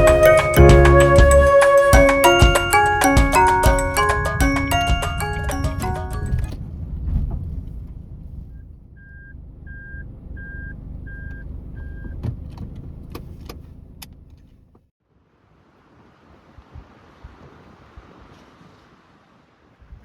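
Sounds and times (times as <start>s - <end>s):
car engine rumble: 2.6s - 14.9s.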